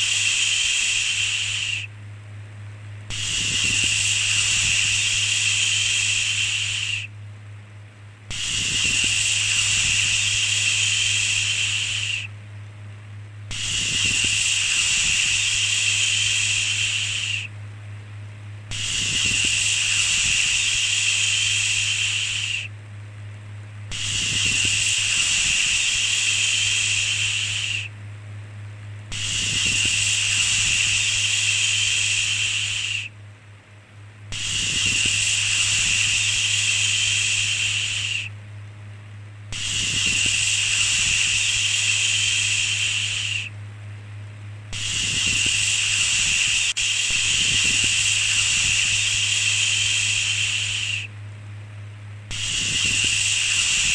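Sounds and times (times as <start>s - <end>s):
steady low hum: 0.0s - 53.9s
person shushing: 13.5s - 17.5s, 23.9s - 27.9s, 39.6s - 43.5s.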